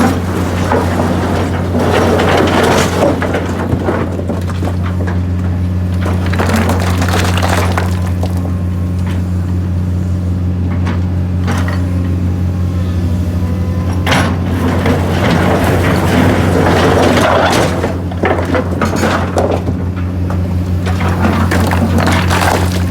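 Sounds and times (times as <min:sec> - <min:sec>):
rocks clattering and crashing: 0:00.0 - 0:08.6, 0:14.6 - 0:22.9
engine humming: 0:00.0 - 0:22.9.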